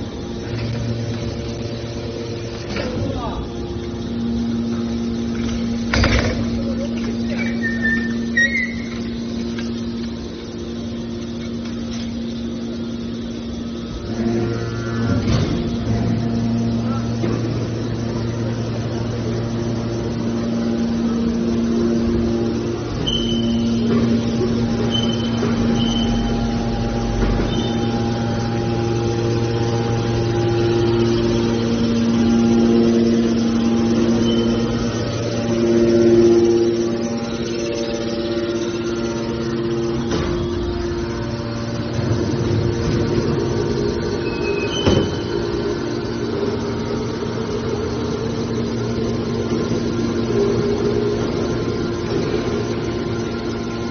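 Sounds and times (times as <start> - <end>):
held whining tones: 0.0 - 53.9
metal baler motor humming: 0.0 - 53.9
high squeak: 7.3 - 9.1, 23.0 - 23.9, 44.2 - 45.4.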